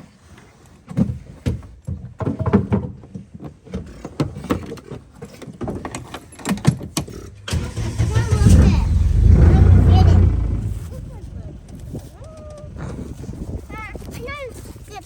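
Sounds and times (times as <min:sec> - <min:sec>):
irregular knocks and clatters: 0:00.9 - 0:07.2.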